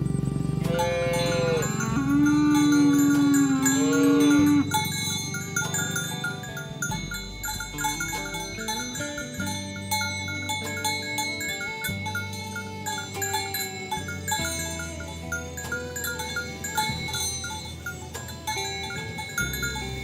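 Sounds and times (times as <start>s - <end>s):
background music with mallet notes: 0.0s - 20.0s
cow mooing: 0.6s - 9.4s.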